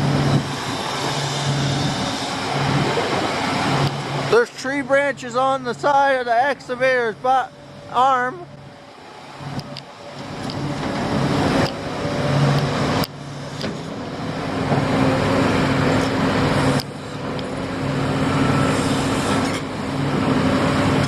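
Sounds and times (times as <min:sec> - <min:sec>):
excavator diesel engine running: 0:00.0 - 0:21.0.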